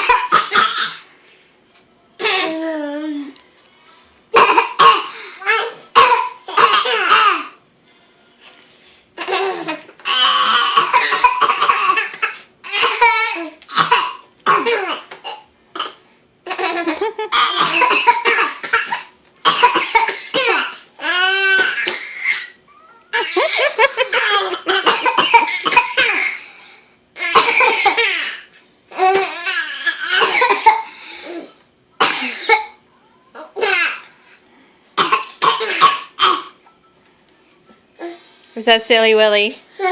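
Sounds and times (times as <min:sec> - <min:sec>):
baby laughing: 0:16.4 - 0:18.0, 0:21.1 - 0:25.0
person fake coughing: 0:17.3 - 0:20.6, 0:23.2 - 0:26.3, 0:27.3 - 0:28.1, 0:30.0 - 0:30.9, 0:32.0 - 0:32.8.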